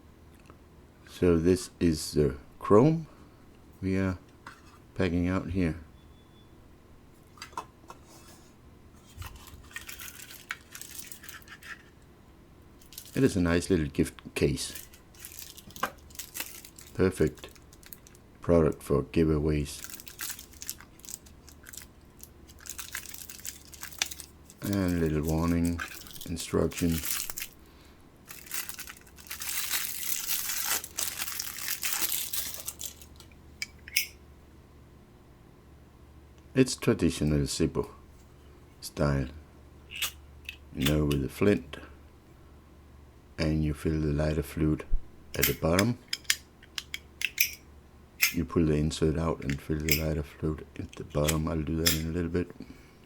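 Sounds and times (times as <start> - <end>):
packaging rustling: 9.2 - 11.9, 12.8 - 13.4, 14.6 - 18.2, 19.7 - 33.3.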